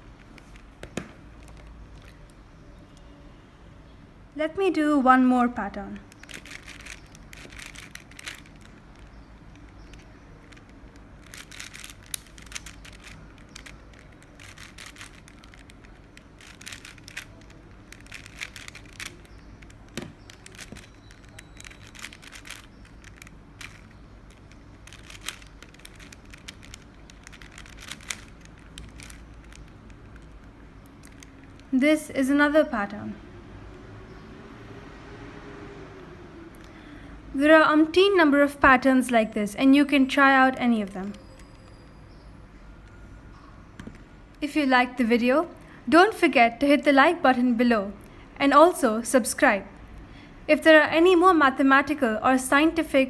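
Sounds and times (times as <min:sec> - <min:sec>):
puzzle cube layers clicking: 0:05.9 - 0:32.5.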